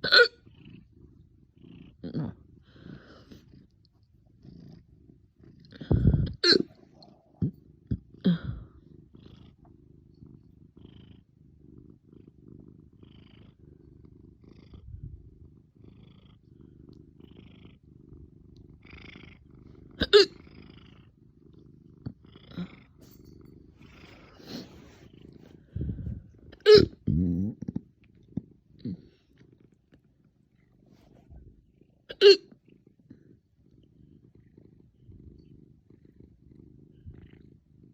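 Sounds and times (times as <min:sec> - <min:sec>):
person hiccuping: 0:00.0 - 0:00.4, 0:06.3 - 0:06.7, 0:20.0 - 0:20.4, 0:26.6 - 0:27.0, 0:32.1 - 0:32.5
low steady rumble: 0:14.8 - 0:15.8, 0:23.0 - 0:26.6.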